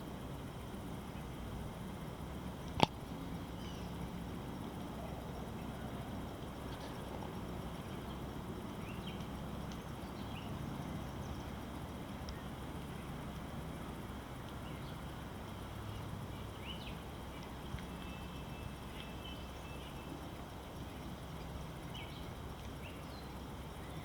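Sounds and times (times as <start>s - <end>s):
faint bird chirps: 3.5s - 4.0s.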